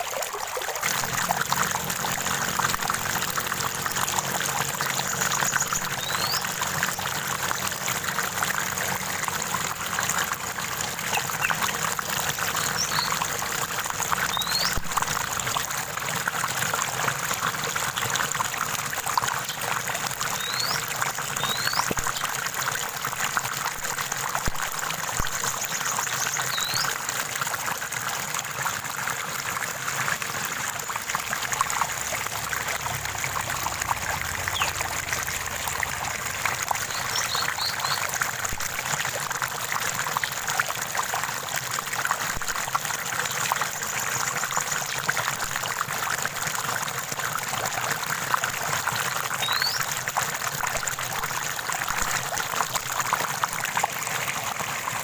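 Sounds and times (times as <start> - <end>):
stream trickling over rocks: 0.0 - 55.0
high bird chirps: 5.4 - 6.5, 12.6 - 13.2, 20.4 - 20.8, 36.9 - 38.0, 49.4 - 49.8.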